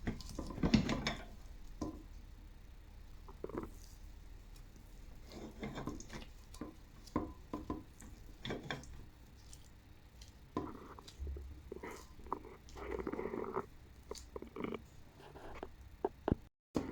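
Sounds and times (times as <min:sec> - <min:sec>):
knocks and scrapes of food preparation: 0:00.0 - 0:02.2, 0:03.2 - 0:16.9.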